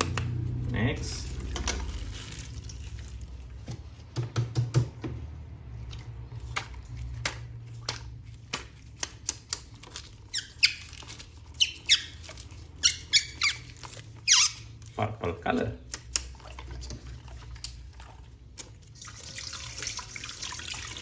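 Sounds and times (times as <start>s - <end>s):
short sharp squeaks: 10.2s - 14.8s.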